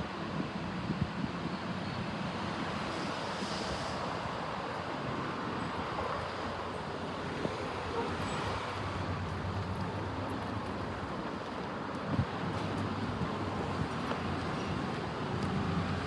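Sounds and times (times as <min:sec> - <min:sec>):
urban background hum: 0:00.0 - 0:16.0
vehicle low rumble: 0:06.4 - 0:16.0.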